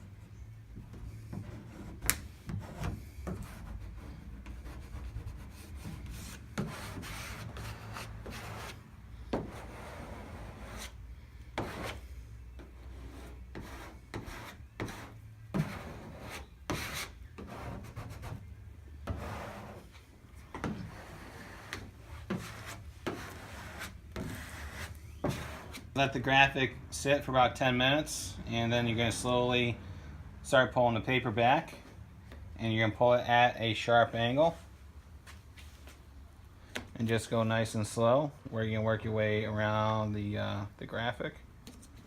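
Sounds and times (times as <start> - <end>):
squeegee scraping over paper: 20.8 - 26.0.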